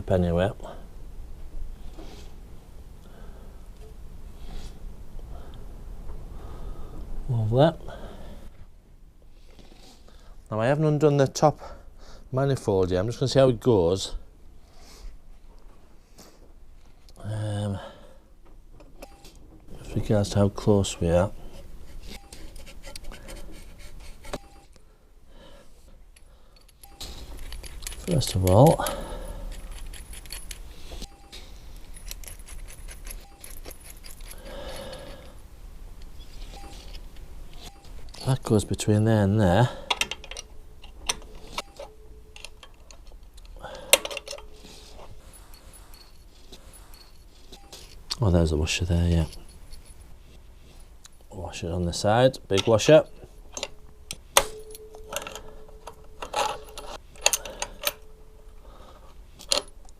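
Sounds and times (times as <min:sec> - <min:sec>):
small metal parts clinking: 0:26.2 - 0:31.1, 0:31.7 - 0:35.4, 0:39.9 - 0:48.0, 0:53.5 - 0:58.2.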